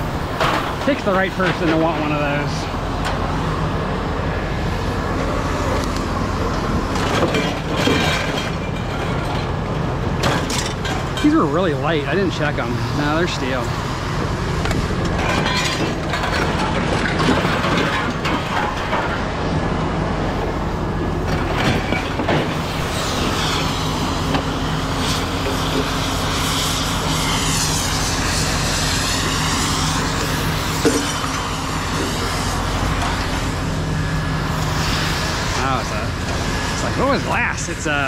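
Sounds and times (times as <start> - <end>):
vehicle engine running: 0.0 - 38.0
metal clanks: 14.6 - 19.3.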